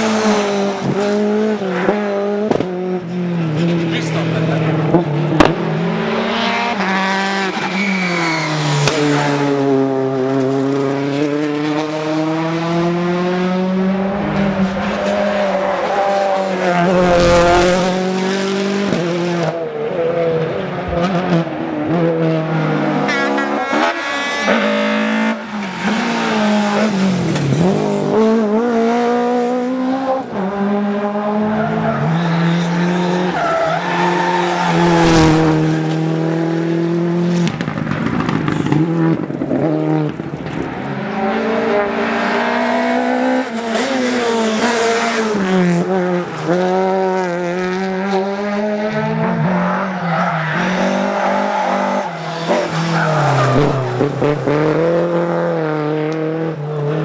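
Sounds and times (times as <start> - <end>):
rally car engines revving hard: 0.0 - 57.0
loud rushing burst: 16.3 - 18.5.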